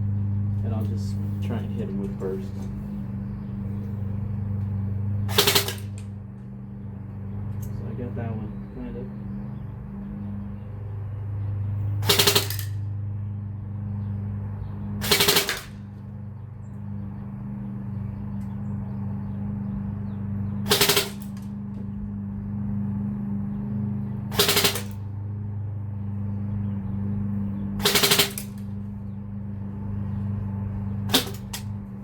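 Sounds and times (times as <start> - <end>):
steady low hum: 0.0 - 32.0
airsoft rifle firing bursts: 5.3 - 6.0, 12.0 - 12.8, 15.0 - 15.8, 20.7 - 21.4, 24.3 - 25.0, 27.8 - 28.6, 31.1 - 31.7.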